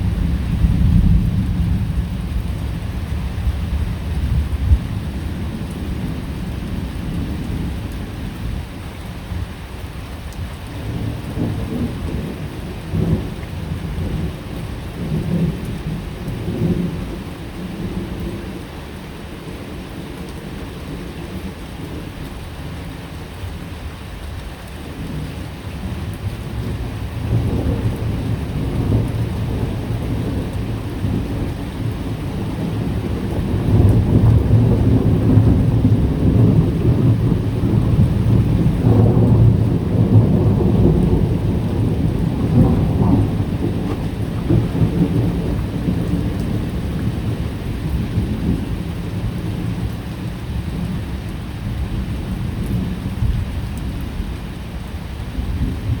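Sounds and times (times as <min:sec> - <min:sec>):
rolling thunder: 0:00.0 - 0:08.6, 0:25.0 - 0:54.4
steady rain: 0:00.0 - 0:56.0.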